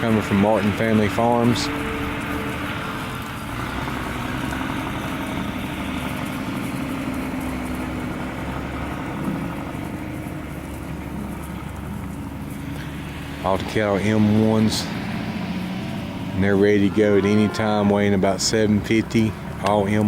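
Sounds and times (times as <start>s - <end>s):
engine idling: 0.0s - 20.0s
steady rushing noise: 0.0s - 20.0s.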